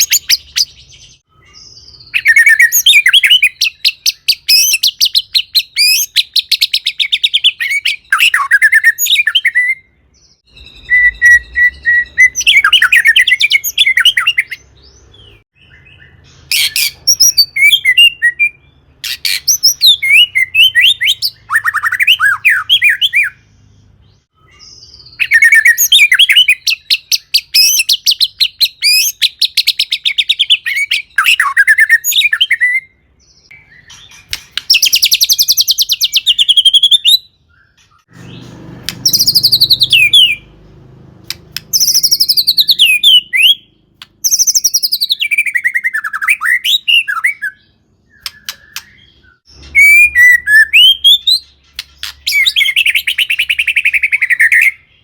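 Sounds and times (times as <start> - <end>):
songbird trills and whistles: 0.0 - 40.5, 41.3 - 55.0.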